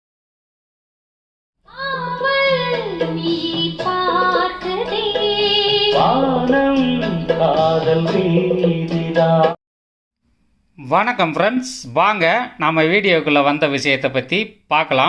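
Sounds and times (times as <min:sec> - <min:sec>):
instrumental backing: 0:01.7 - 0:09.6
person singing high: 0:03.5 - 0:09.0.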